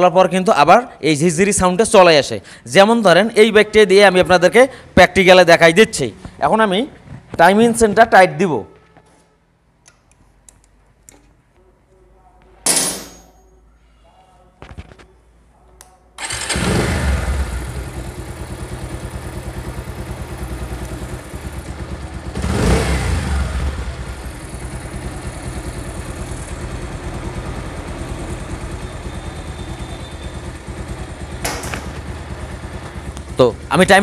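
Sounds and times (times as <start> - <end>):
motorcycle engine idling: 16.2 - 33.7.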